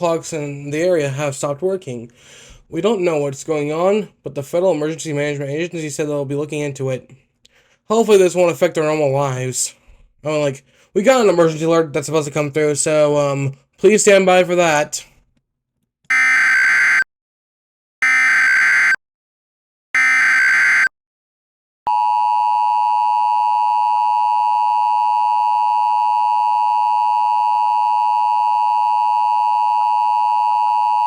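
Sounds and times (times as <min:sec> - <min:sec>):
buzzing digital data screech: 0:20.0 - 0:20.9.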